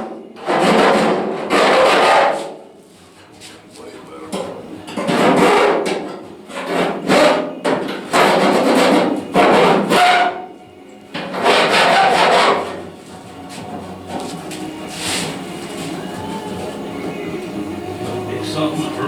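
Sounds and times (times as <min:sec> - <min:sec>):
rough scraping on metal: 0:00.4 - 0:02.6, 0:04.9 - 0:10.5, 0:11.1 - 0:16.1.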